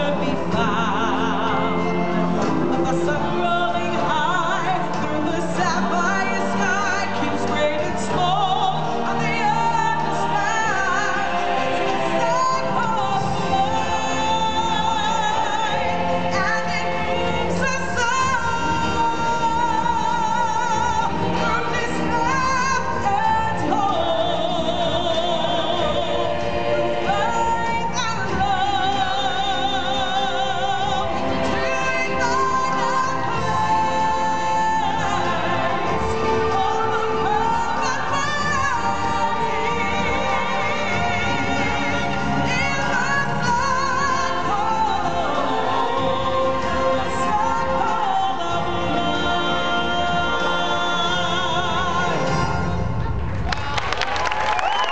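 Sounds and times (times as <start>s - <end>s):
musical accompaniment: 0.0s - 54.9s.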